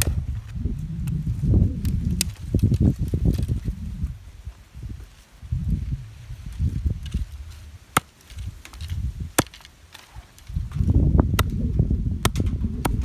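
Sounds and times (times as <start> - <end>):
low rumbling: 0.0 - 9.4, 10.4 - 13.0
rustling: 1.9 - 11.0
wood cracking: 7.0 - 13.0.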